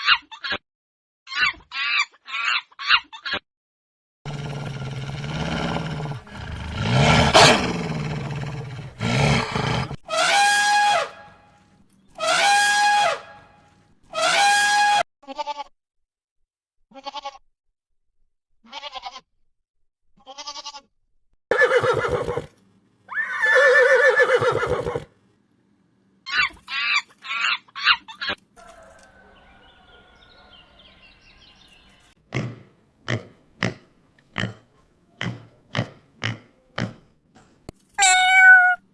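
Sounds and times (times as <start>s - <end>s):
farm animal calls: 21.5s - 22.5s, 23.1s - 25.1s, 27.3s - 32.1s, 38.0s - 38.8s.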